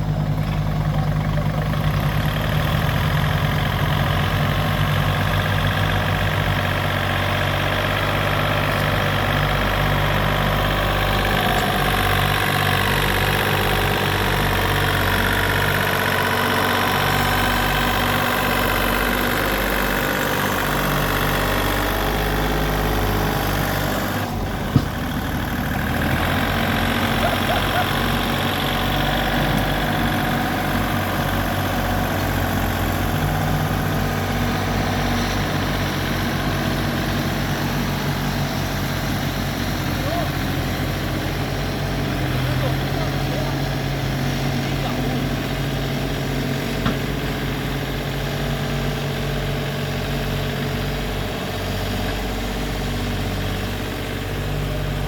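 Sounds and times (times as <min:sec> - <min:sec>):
work machine engine running: 0:00.0 - 0:55.0
sharp knock: 0:24.7 - 0:25.2.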